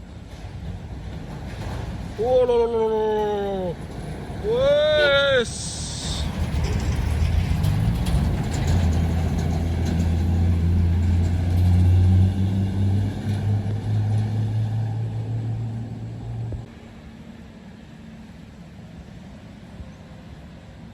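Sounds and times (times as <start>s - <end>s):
diesel truck engine pulling hard: 0.1s - 16.7s.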